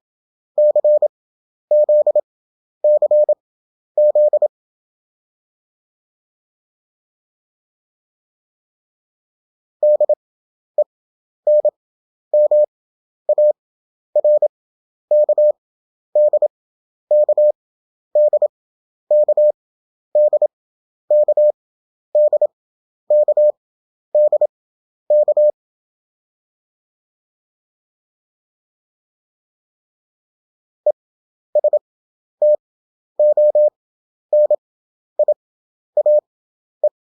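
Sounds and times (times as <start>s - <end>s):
morse code beeps: 0.6s - 1.1s, 1.7s - 2.2s, 2.8s - 3.4s, 4.0s - 4.5s, 9.8s - 10.2s, 11.5s - 11.7s, 12.4s - 12.7s, 13.3s - 13.6s, 14.2s - 14.5s, 15.1s - 15.6s, 16.2s - 16.5s, 17.1s - 17.5s, 18.2s - 18.5s, 19.1s - 19.5s, 20.2s - 20.5s, 21.1s - 21.5s, 22.2s - 22.5s, 23.1s - 23.5s, 24.2s - 24.5s, 25.1s - 25.5s, 31.6s - 31.8s, 33.2s - 33.7s, 34.3s - 34.6s, 35.2s - 35.4s, 36.0s - 36.2s.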